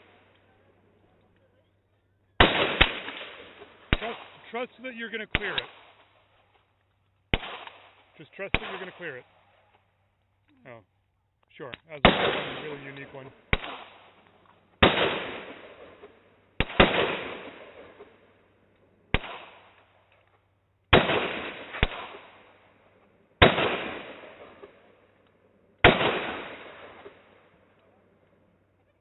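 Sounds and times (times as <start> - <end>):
rifle shots echoing: 2.4 - 6.7, 7.3 - 9.9, 12.0 - 20.3, 20.9 - 28.8
weaker sharp cracks: 2.4 - 10.3, 11.4 - 28.4.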